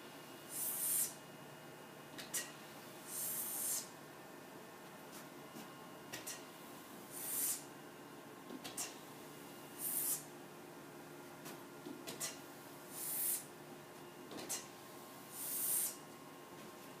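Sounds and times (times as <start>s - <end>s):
hissing shh sound effect: 0.5s - 1.2s, 3.1s - 3.9s, 7.1s - 7.7s, 9.8s - 10.3s, 12.2s - 13.5s, 15.3s - 16.0s.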